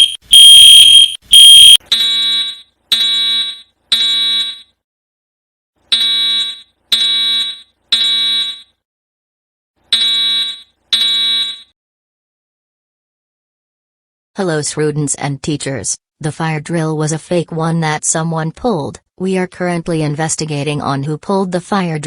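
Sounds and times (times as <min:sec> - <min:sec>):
shrill high-pitched alarm beeps: 0:00.0 - 0:04.6.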